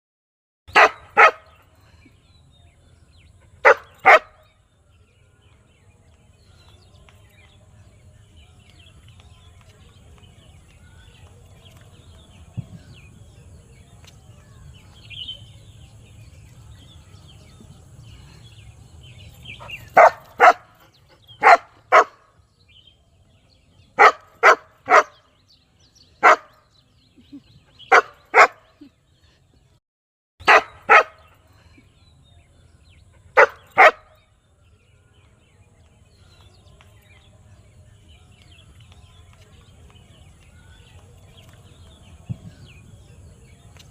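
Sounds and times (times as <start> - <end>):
dog barking loudly: 0.7 - 1.5, 3.6 - 4.3, 19.6 - 20.7, 21.4 - 22.2, 24.0 - 25.1, 26.2 - 26.5, 27.9 - 28.6, 30.4 - 31.2, 33.4 - 34.1.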